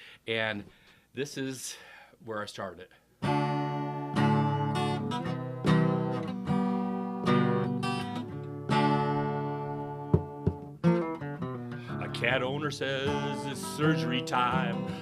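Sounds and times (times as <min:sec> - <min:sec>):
acoustic guitar strumming chords: 0:03.2 - 0:15.0.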